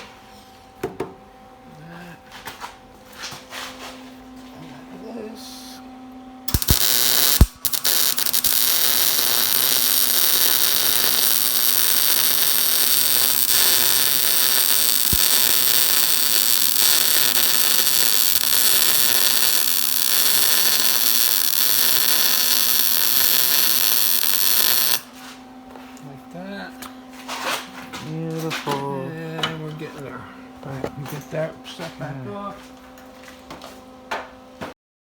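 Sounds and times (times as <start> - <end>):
low hum: 3.8 - 32.6
arc welding crackling sizzle: 6.5 - 25.1.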